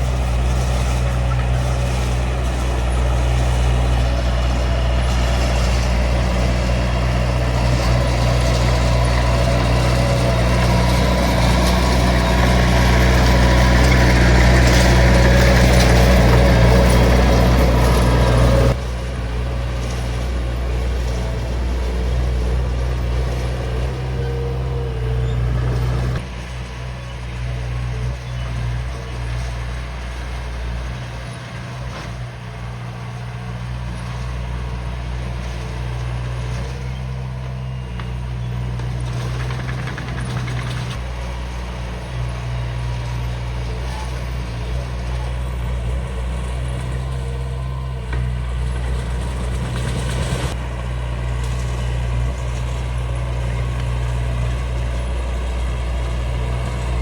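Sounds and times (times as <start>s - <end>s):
bulldozer diesel engine droning: 0.0s - 57.0s.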